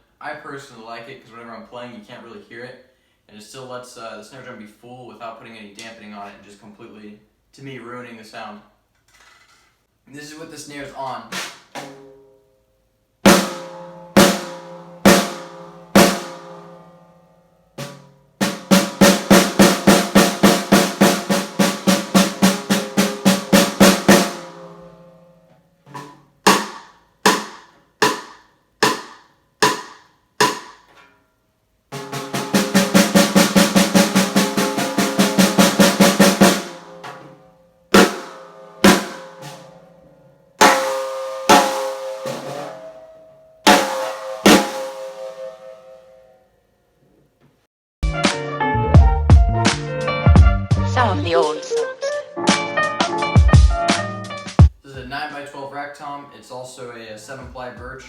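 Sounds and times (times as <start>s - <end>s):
snare drum strokes and rolls: 11.3s - 12.0s, 13.3s - 16.5s, 17.8s - 24.7s, 25.9s - 30.8s, 31.9s - 39.7s, 40.6s - 42.8s, 43.7s - 45.4s.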